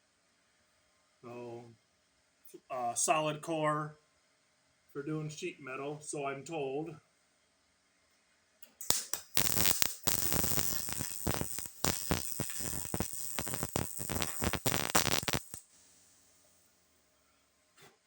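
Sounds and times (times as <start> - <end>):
welder arc crackling: 8.8 - 15.7.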